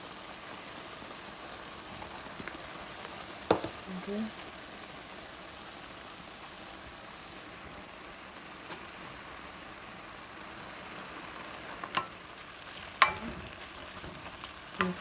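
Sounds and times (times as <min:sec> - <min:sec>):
meat sizzling in a pan: 0:00.0 - 0:15.0
utensil clinking against pan: 0:13.0 - 0:13.6.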